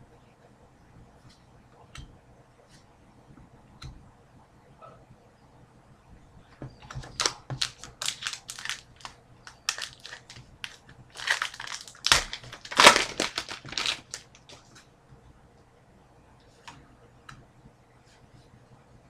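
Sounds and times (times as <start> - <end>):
wrapper crinkling and tearing: 7.0 - 14.6.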